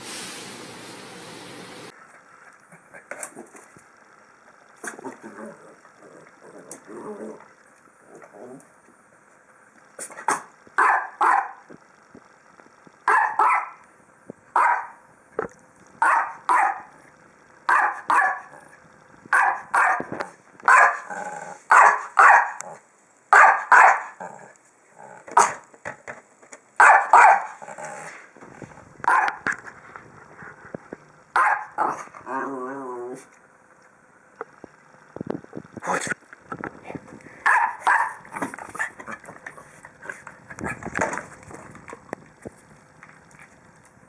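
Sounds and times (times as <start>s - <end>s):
dog barking: 10.3s - 11.6s, 13.1s - 13.8s, 14.6s - 15.0s, 16.0s - 16.9s, 17.7s - 18.5s, 19.3s - 20.1s, 20.7s - 21.1s, 21.7s - 22.6s, 23.3s - 24.2s, 25.4s - 25.6s, 26.8s - 27.6s, 29.1s - 29.4s, 31.4s - 32.0s, 37.4s - 38.2s.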